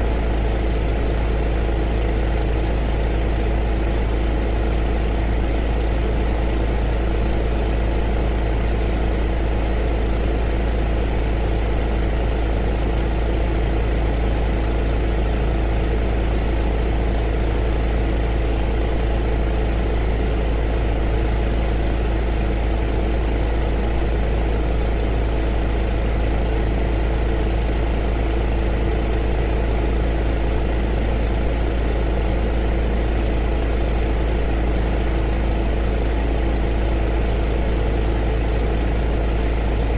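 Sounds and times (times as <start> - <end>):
heater running: 0.0 - 39.9.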